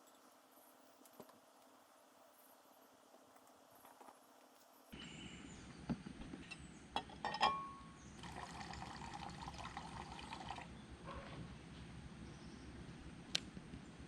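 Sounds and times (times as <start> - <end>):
liquid pouring: 8.2 - 10.7.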